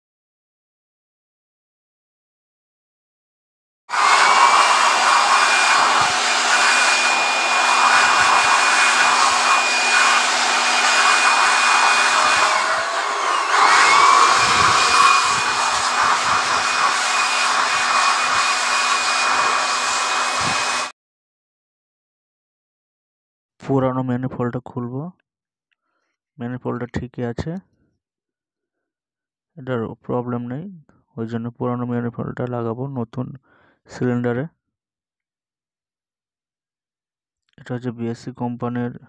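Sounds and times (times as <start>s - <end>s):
electric air blower whining: 3.9s - 20.9s.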